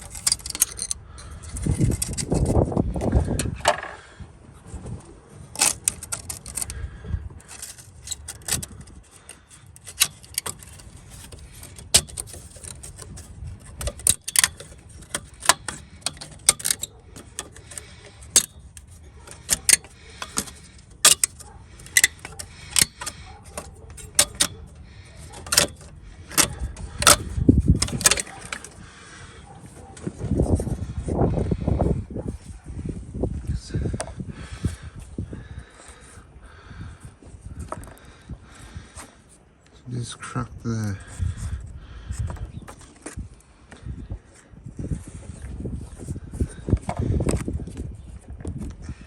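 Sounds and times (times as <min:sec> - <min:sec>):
metal tools clicking and clinking: 0:00.0 - 0:02.7, 0:05.5 - 0:06.8, 0:07.4 - 0:29.9.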